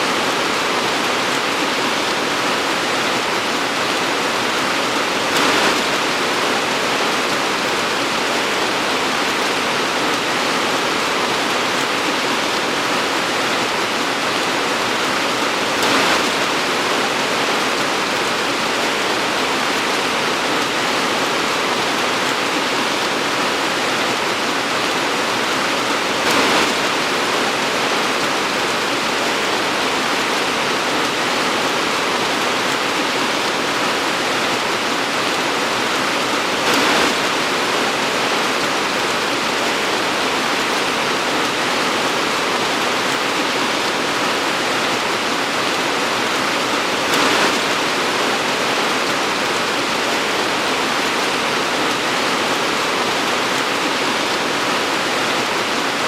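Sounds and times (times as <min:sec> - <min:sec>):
torrential rain pouring: 0:00.0 - 0:56.0.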